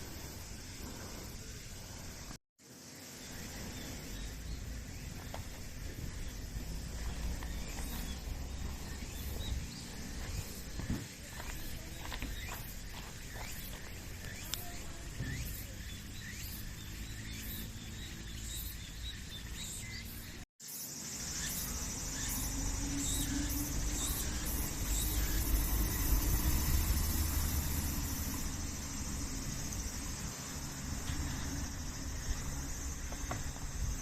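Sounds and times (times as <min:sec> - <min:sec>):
insect calls: 0:00.0 - 0:34.0
bird chirps: 0:03.2 - 0:20.4.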